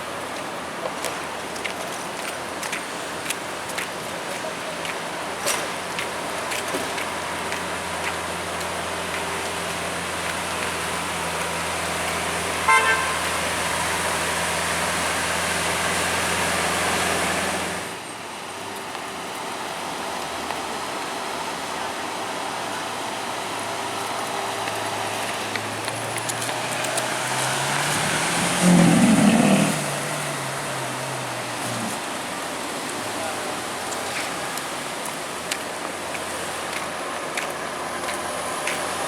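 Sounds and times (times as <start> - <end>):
low engine hum: 0.0 - 39.0
street traffic noise: 0.0 - 39.0
car horn toot: 12.6 - 13.4.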